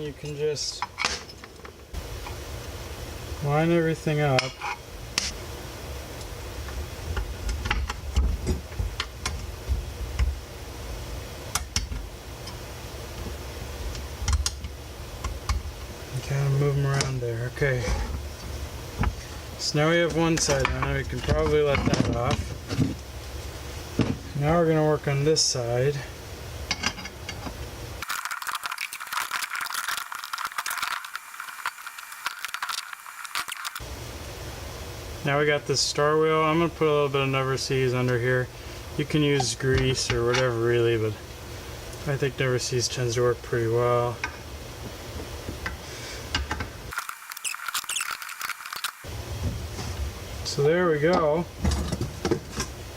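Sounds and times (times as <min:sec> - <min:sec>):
metal parts clicking and rattling: 0:28.0 - 0:33.8, 0:46.4 - 0:49.1.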